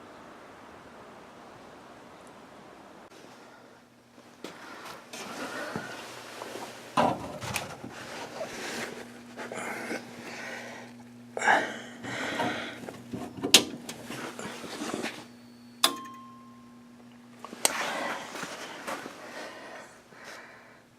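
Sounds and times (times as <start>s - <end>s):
faint low hum: 0.0s - 20.9s
rustling and handling noises: 4.2s - 10.4s, 12.3s - 15.4s, 17.4s - 20.4s.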